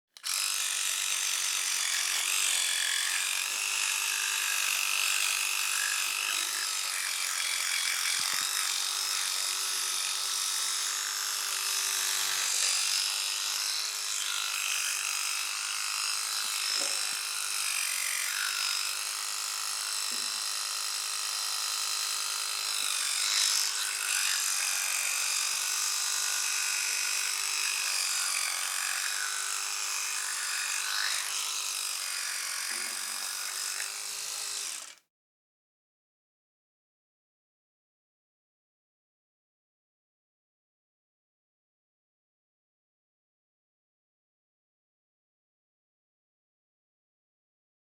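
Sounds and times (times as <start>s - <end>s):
electric toothbrush running: 0.2s - 35.0s.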